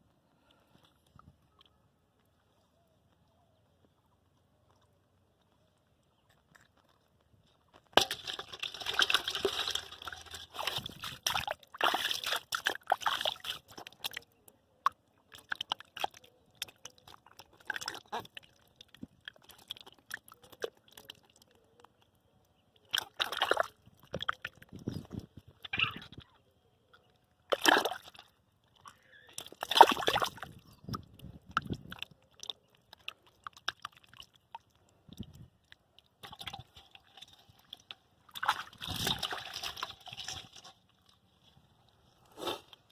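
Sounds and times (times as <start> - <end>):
muddy water sloshing and splashing: 8.0 - 22.1, 22.8 - 26.3, 27.5 - 42.9.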